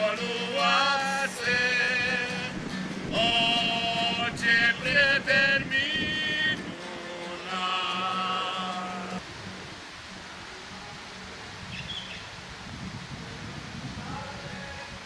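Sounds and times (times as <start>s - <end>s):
man singing long notes: 0.0s - 9.2s, 13.9s - 15.0s.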